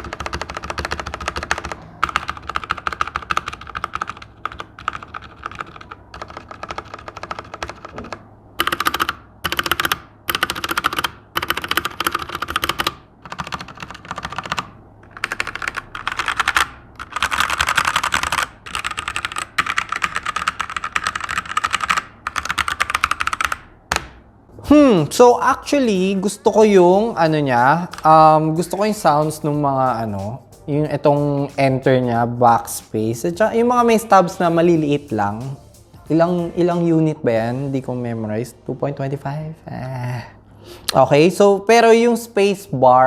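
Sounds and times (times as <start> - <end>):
mechanical keyboard typing: 0.0 - 24.2.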